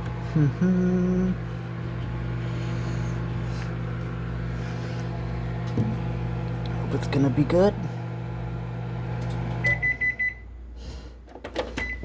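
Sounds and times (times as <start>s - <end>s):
kitchen appliance humming: 0.0s - 10.4s
person humming: 0.2s - 1.5s.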